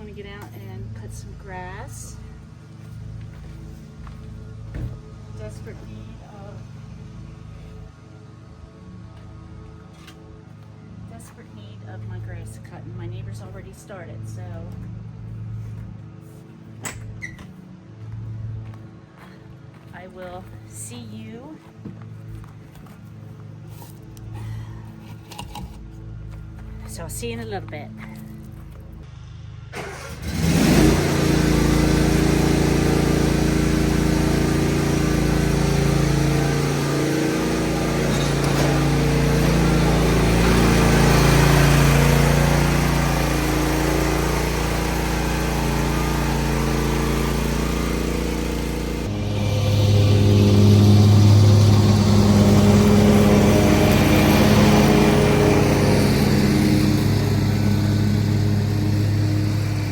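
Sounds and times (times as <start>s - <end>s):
lawn mower engine running: 0.0s - 59.9s.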